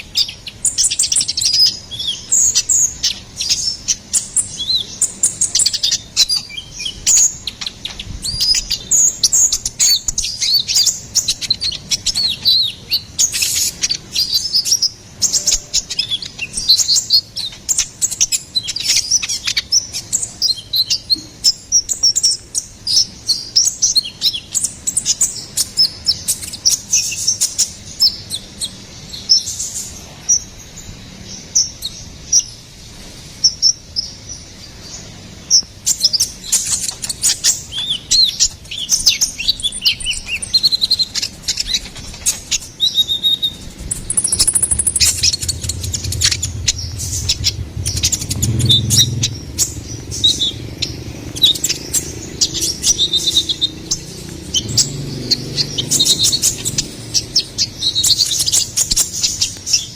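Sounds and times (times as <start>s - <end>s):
bird chirping: 0.0s - 59.9s
sharp clicks: 43.9s - 48.2s.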